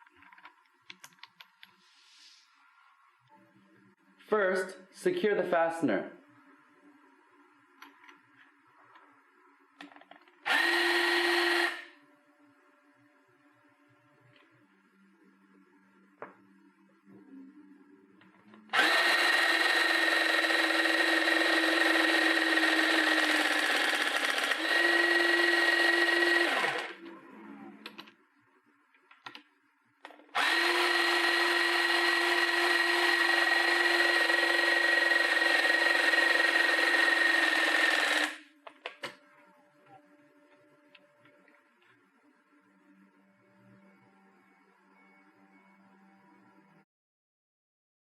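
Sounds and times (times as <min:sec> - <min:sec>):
hydraulic crimper motor running: 0:10.4 - 0:11.9, 0:18.7 - 0:27.1, 0:30.3 - 0:38.4.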